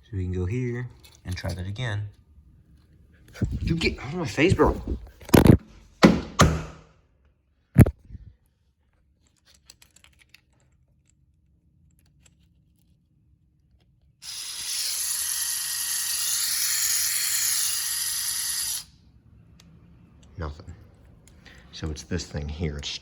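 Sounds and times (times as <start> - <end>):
small electric motor whirring: 14.2 - 19.0.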